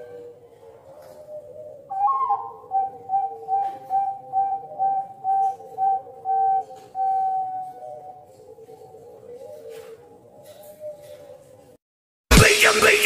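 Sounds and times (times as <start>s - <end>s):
bird whistling: 1.9s - 8.2s.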